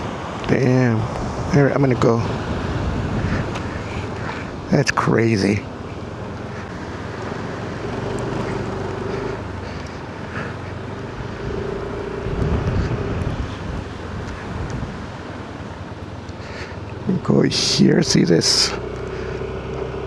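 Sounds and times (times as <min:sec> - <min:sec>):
car engine and road noise: 0:00.0 - 0:20.0
low rumble: 0:01.0 - 0:16.0.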